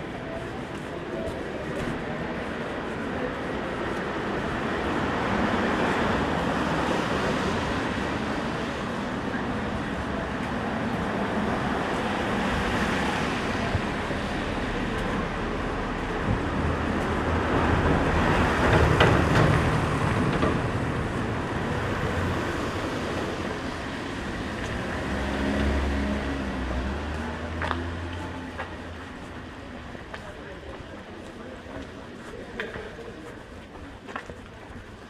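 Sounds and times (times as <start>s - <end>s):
street traffic noise: 0.0s - 35.0s
vehicle passing by: 21.3s - 29.0s.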